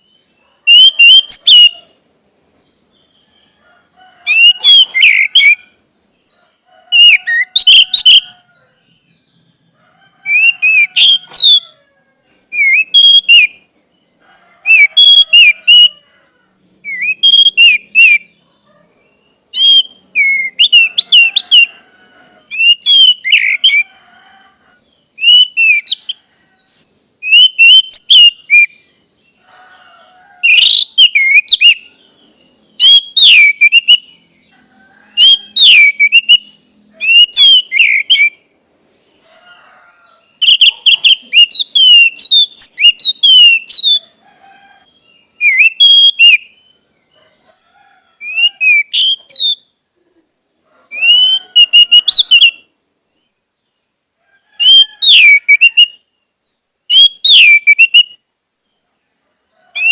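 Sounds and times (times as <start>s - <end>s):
thrush singing whistled notes: 0.0s - 11.8s, 12.4s - 29.6s, 30.3s - 38.5s, 40.1s - 44.2s, 44.8s - 47.5s, 48.2s - 49.8s, 50.9s - 53.3s, 54.6s - 58.3s
steady hiss: 1.7s - 4.2s, 5.5s - 6.9s, 23.8s - 27.4s, 28.4s - 30.4s, 35.9s - 41.3s.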